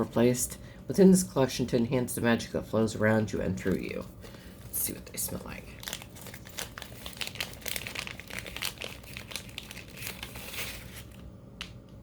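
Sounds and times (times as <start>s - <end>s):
packaging crinkling: 3.6s - 11.8s.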